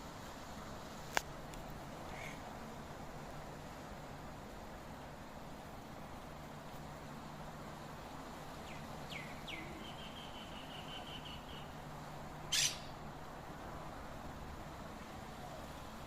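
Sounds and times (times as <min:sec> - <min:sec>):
bird chirps and trill: 0:12.5 - 0:12.9
harsh bird squawk: 0:12.5 - 0:12.9.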